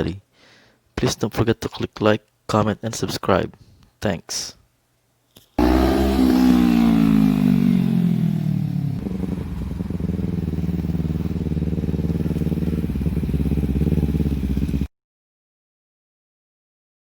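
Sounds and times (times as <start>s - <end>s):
engine revving and idling: 5.6s - 14.9s.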